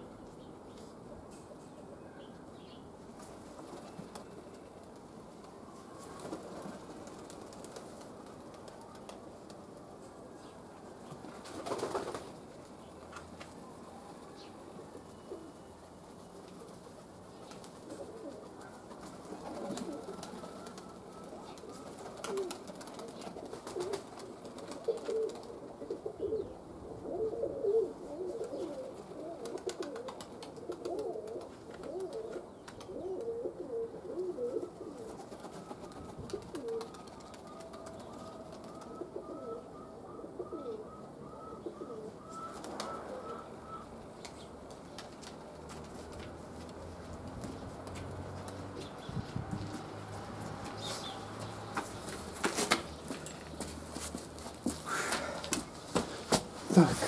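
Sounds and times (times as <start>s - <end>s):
pigeons cooing: 14.4s - 44.5s, 47.5s - 57.0s.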